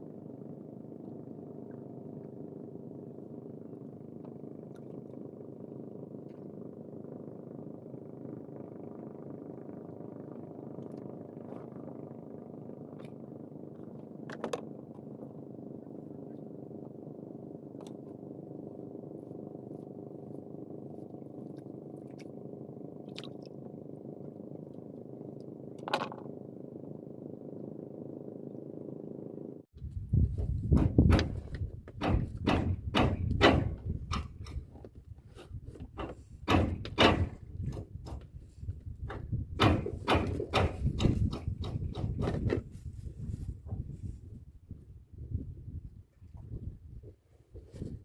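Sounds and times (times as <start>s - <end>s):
small engine running: 0.0s - 29.6s
loud knocks: 30.7s - 34.4s, 36.0s - 38.2s, 39.6s - 42.6s.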